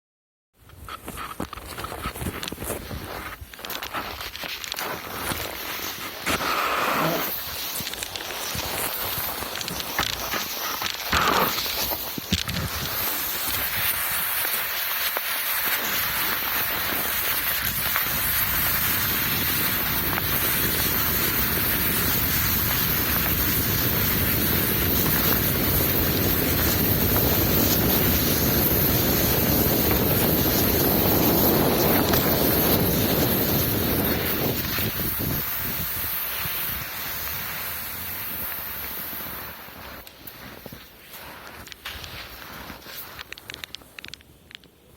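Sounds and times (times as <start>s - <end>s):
wind buffeting microphone: 15.9s - 40.7s.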